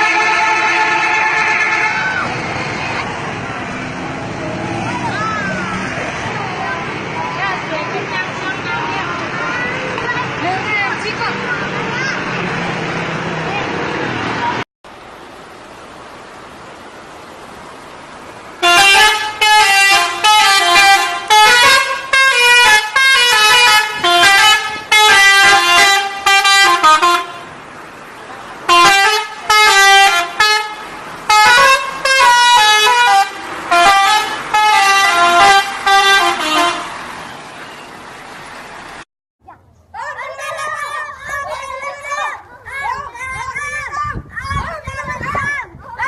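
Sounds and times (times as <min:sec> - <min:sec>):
musical air horn tune: 0:00.0 - 0:02.0, 0:18.6 - 0:27.5, 0:28.7 - 0:37.0.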